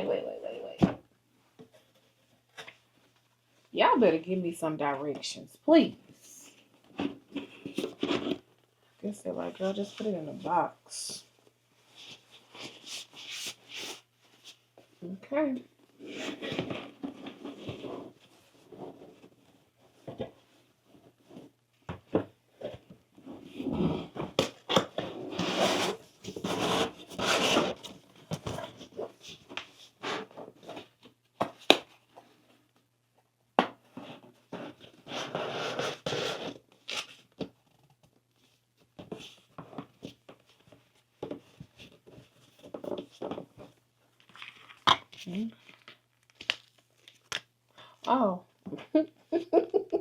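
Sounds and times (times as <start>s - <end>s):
box packaging scraping and rustling: 16.0s - 19.2s, 23.4s - 31.0s, 34.0s - 37.3s.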